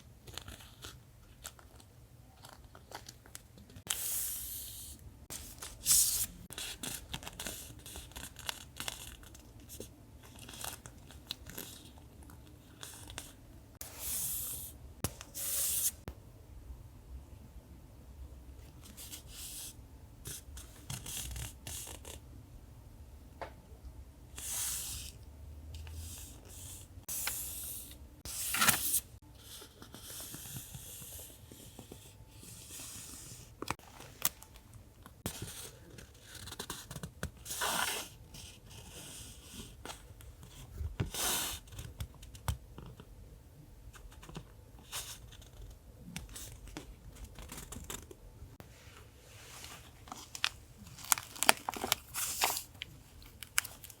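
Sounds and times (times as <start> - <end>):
paper rustling and tearing: 50.0 - 54.0.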